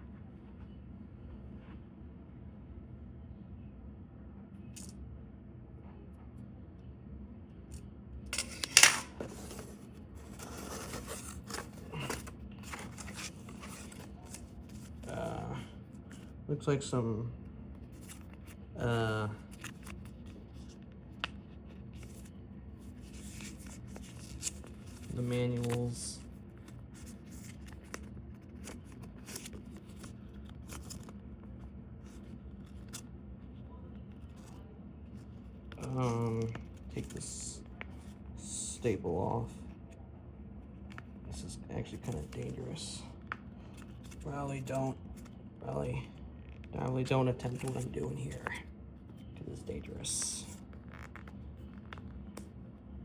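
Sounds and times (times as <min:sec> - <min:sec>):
faint low hum: 0:00.0 - 0:53.0
rustling and scraping: 0:08.3 - 0:16.3, 0:19.4 - 0:33.1.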